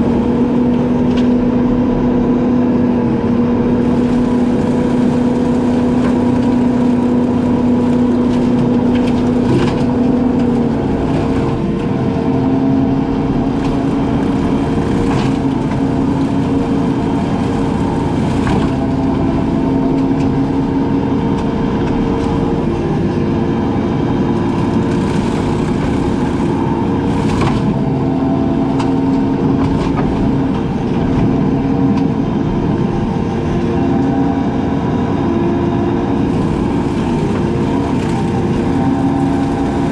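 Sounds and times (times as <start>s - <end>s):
brush cutter engine running: 0.0s - 39.9s
brush and wood cracking: 3.9s - 12.0s, 24.4s - 27.8s.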